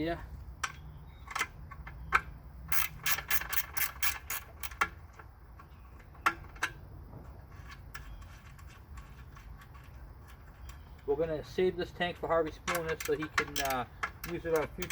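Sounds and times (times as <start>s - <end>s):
ratchet wrench clicking: 2.7s - 4.9s, 12.6s - 14.9s.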